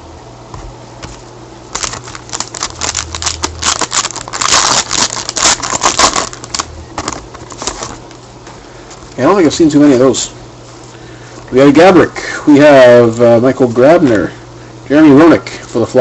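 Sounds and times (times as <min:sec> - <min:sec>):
plastic packaging crinkling: 0:01.1 - 0:08.2.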